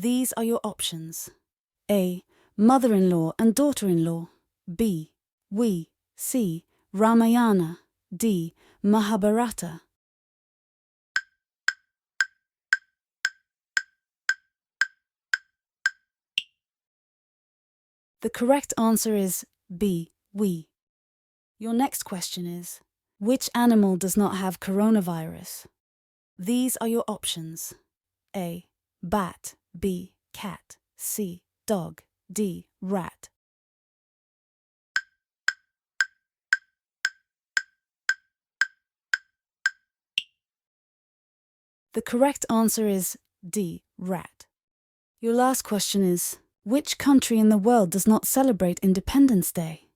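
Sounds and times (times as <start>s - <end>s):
wood-block ticks: 11.2s - 16.6s, 35.0s - 40.4s.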